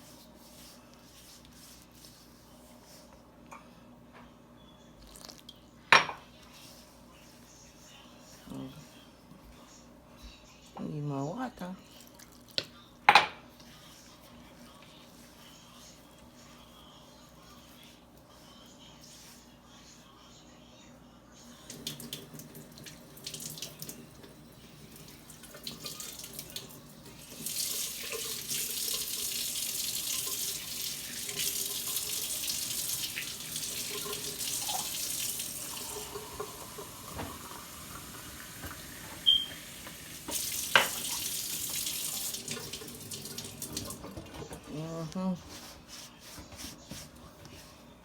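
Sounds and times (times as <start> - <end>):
tap water running into sink: 21.7 - 44.6.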